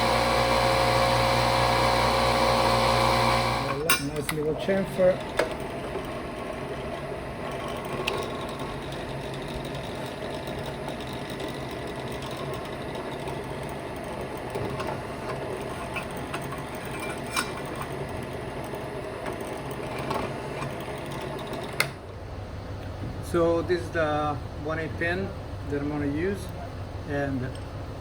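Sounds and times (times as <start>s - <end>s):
electric drill running: 0.0s - 22.1s.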